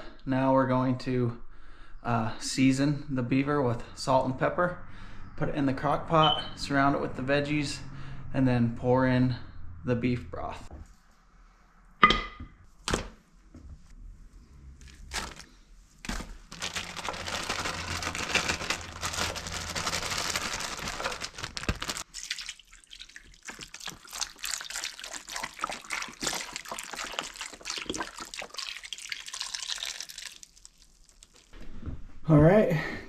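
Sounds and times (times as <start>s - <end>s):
small splashes: 16.1s - 31.6s
broth pouring into a pot: 16.6s - 31.6s.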